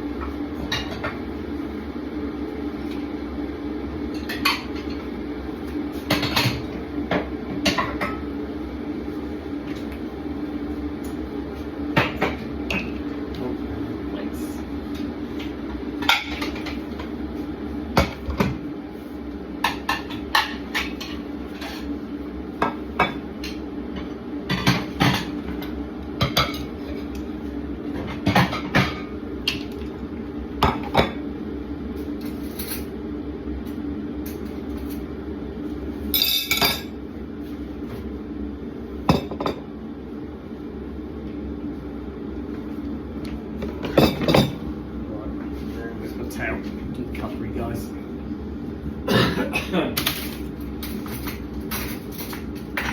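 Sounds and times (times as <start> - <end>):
steady hum: 0.0 - 52.9.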